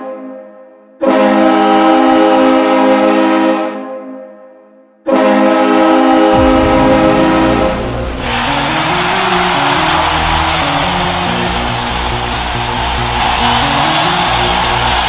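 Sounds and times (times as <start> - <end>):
hockey goal horn blasts: 1.0 - 3.7
goal song music: 6.3 - 15.0.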